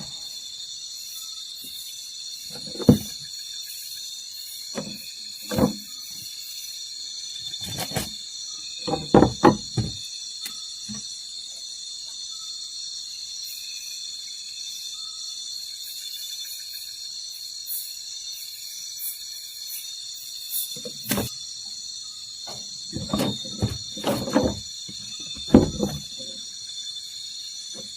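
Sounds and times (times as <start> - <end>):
night insects chorus: 0.0 - 27.9
loud knocks: 8.9 - 10.0, 22.5 - 26.4.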